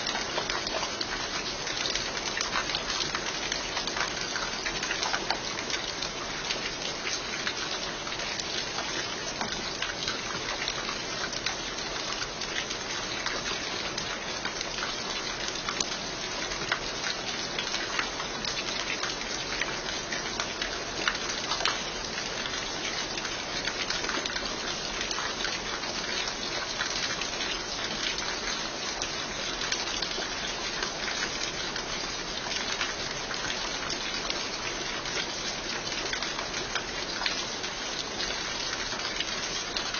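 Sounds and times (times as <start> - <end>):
raindrops ticking on surfaces: 0.0 - 39.9
steady rain falling: 0.0 - 39.9.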